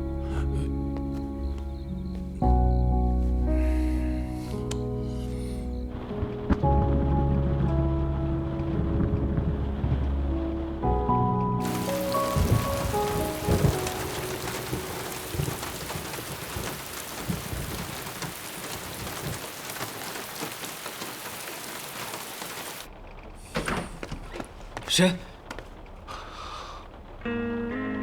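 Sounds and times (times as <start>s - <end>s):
heavy rain pouring: 3.2s - 28.0s
thunder booming: 11.6s - 22.8s.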